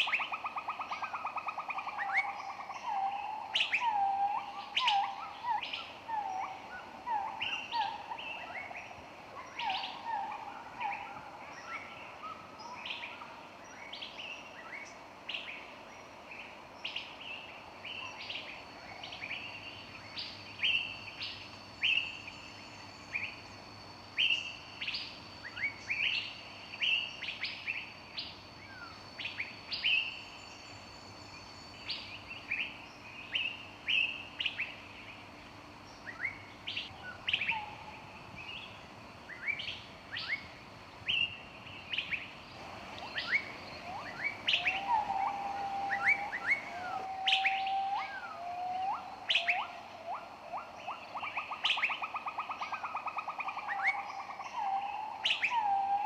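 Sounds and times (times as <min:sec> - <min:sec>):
faint steady hiss: 0:00.0 - 0:56.0
songbirds chirping: 0:00.0 - 0:56.0.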